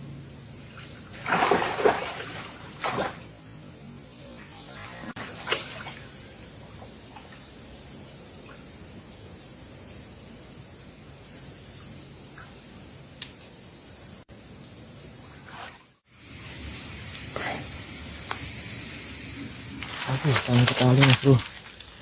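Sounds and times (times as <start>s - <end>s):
low hiss: 16.0s - 22.0s
high-pitched insect drone: 16.1s - 22.0s.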